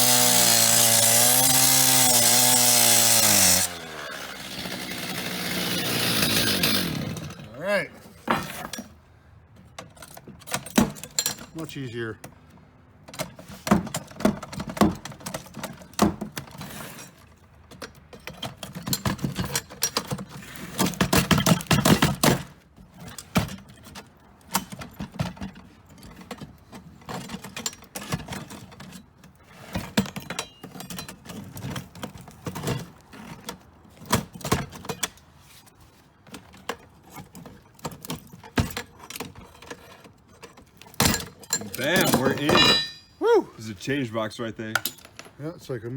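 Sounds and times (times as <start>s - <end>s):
metal clanking and rattling: 36.5s - 43.2s
metal scraping: 41.6s - 43.2s.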